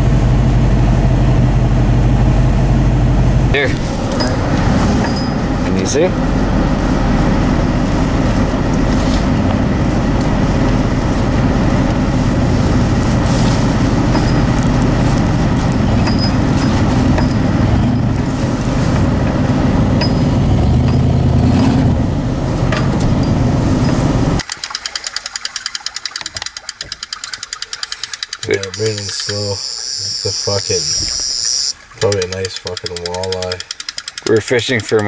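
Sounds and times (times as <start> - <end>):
pickup truck engine running: 0.0 - 24.4.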